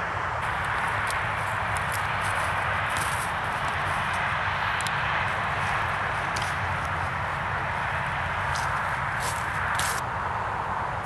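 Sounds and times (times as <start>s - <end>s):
outdoor background noise: 0.0s - 11.0s.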